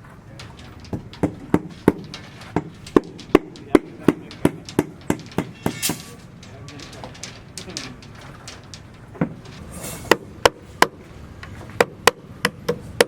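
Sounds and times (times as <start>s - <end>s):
hand hammer striking: 0.7s - 6.4s, 11.8s - 13.0s.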